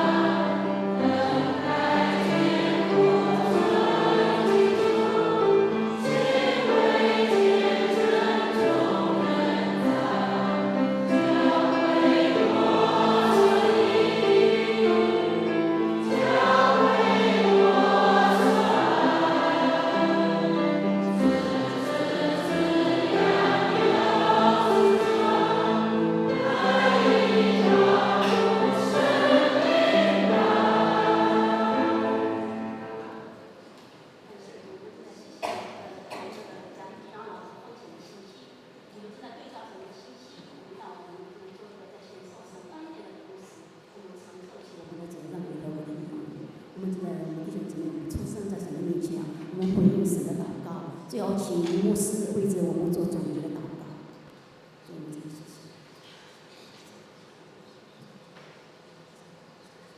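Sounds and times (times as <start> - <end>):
congregation singing a hymn: 0.0 - 33.7, 44.4 - 54.4.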